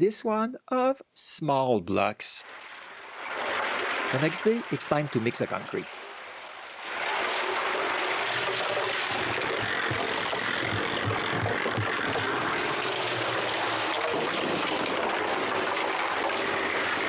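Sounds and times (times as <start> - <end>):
concrete being mixed: 6.9 - 17.0.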